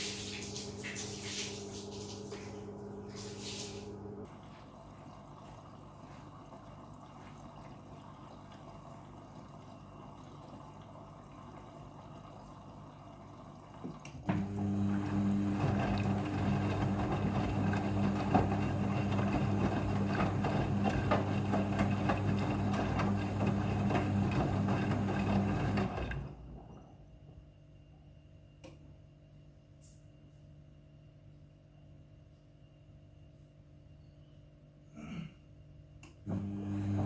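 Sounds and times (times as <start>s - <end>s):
water and clothes sloshing: 0.0s - 19.2s
washing machine motor hum: 0.0s - 27.5s, 36.0s - 37.0s.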